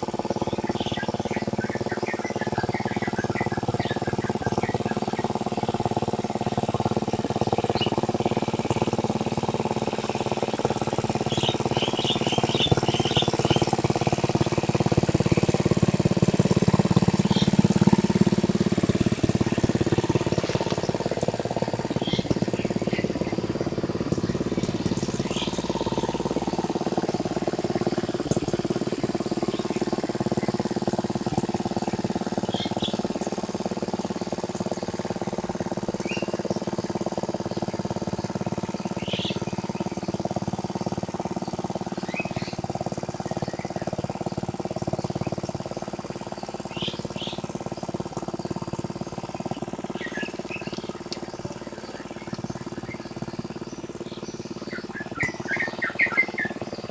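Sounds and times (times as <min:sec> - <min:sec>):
tractor engine running: 0:00.0 - 0:56.9
bird chirps: 0:11.2 - 0:13.7, 0:49.9 - 0:56.9.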